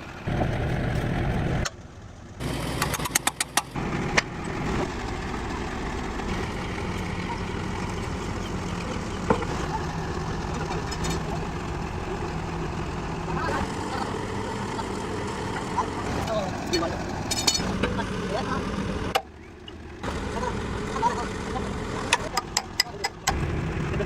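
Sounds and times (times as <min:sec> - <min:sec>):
engine idling: 0:00.0 - 0:24.0.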